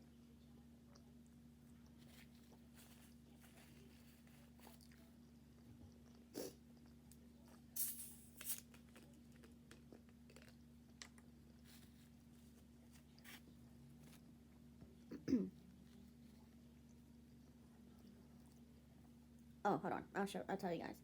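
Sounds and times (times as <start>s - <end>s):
crisp bites and chewing: 8.3s - 12.3s.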